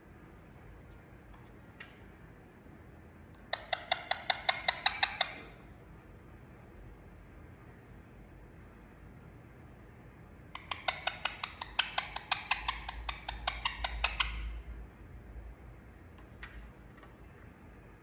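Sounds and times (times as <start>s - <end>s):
parakeet clicking rapidly: 3.4s - 5.4s, 10.6s - 14.6s.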